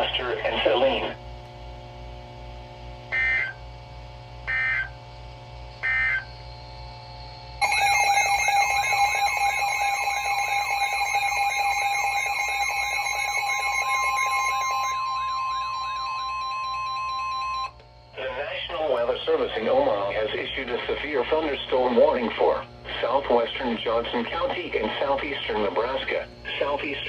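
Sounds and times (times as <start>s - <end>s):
warbling electronic alert tone: 5.8s - 6.3s, 7.6s - 17.7s
digital data tone bursts: 5.8s - 6.4s
steady high tone: 5.8s - 19.5s.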